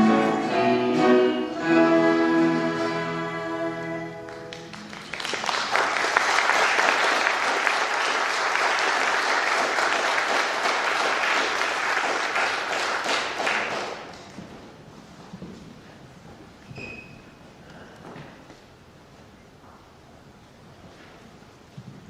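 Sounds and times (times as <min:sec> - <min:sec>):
held music chord: 0:00.0 - 0:04.7
congregation applauding: 0:04.2 - 0:14.4.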